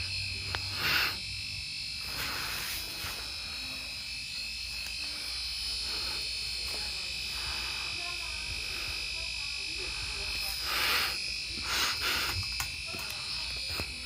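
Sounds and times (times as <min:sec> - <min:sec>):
burst of noise: 0:00.0 - 0:01.3
high-pitched buzzing tone from speakers: 0:00.0 - 0:14.0.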